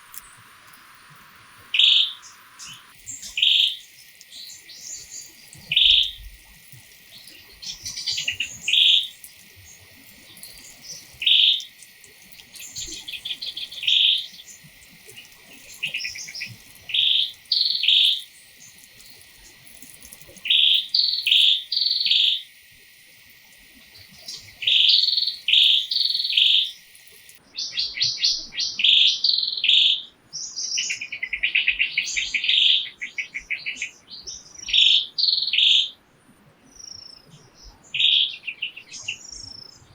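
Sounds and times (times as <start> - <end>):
birds chirping: 0.0 - 28.0.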